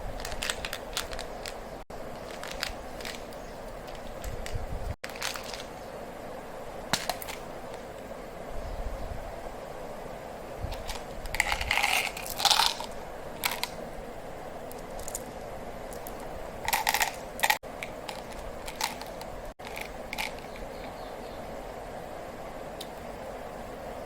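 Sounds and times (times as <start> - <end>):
wrappers crinkling and tearing: 0.1 - 5.8.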